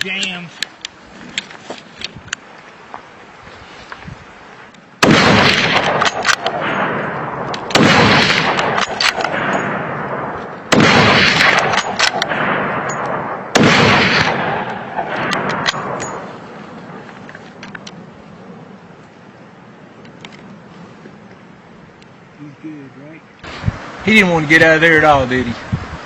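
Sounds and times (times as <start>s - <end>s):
rifle shots echoing: 5.0s - 17.0s.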